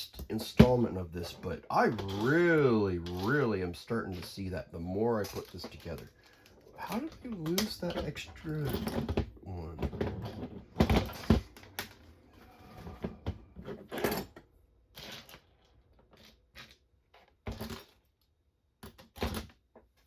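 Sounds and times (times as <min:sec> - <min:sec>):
small parts clicking and tapping: 0:05.2 - 0:09.2.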